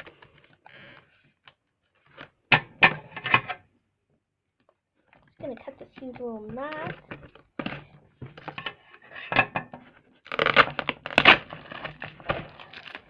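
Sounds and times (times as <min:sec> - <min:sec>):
plastic packaging rustling and tearing: 0:10.1 - 0:13.0.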